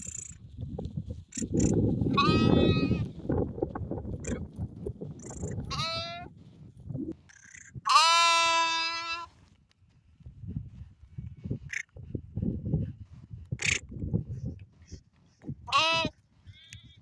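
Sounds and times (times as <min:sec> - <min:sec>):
sheep bleating: 0:02.1 - 0:03.1, 0:05.7 - 0:06.3, 0:07.9 - 0:09.3, 0:15.7 - 0:16.8.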